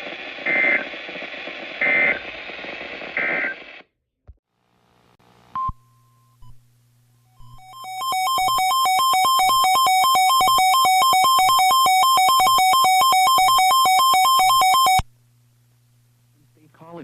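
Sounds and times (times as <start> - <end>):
emergency alert tone: 7.5 - 15.0.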